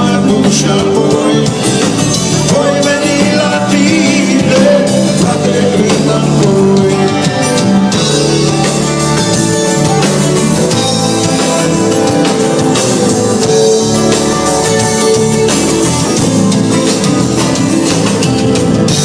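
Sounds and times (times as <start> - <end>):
drum kit: 0.0 - 19.0
electric guitar: 0.0 - 19.0.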